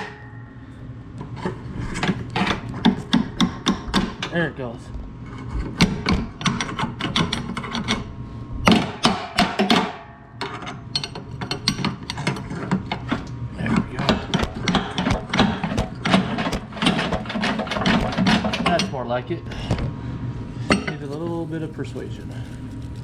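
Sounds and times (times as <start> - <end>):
pry bar clanking and scraping metal: 8.7 - 19.0.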